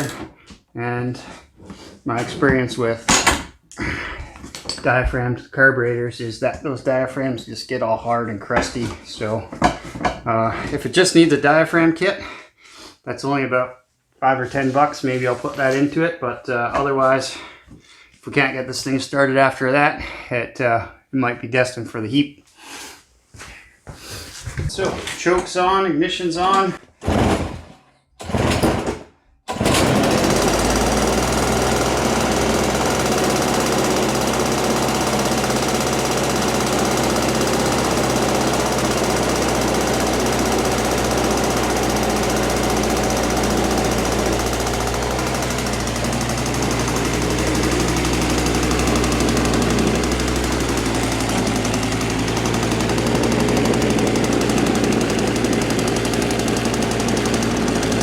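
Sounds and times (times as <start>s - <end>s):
snow thrower engine running: 29.5s - 58.0s.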